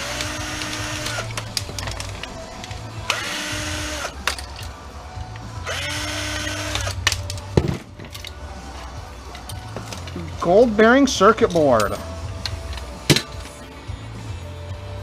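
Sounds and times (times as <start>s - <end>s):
small electric motor spinning: 0.0s - 1.5s, 3.0s - 4.2s, 5.6s - 6.9s.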